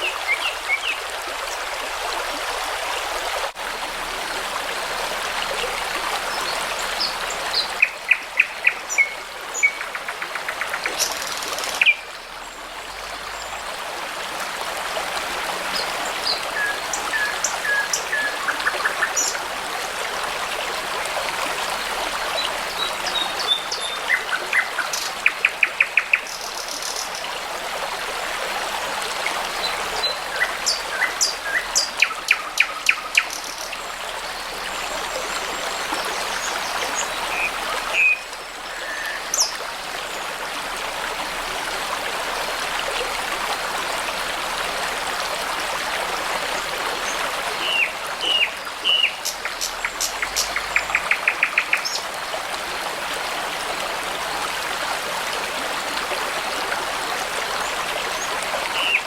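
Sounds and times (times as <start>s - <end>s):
brook babbling: 0.0s - 59.0s
songbirds singing: 29.6s - 39.6s, 47.0s - 52.1s.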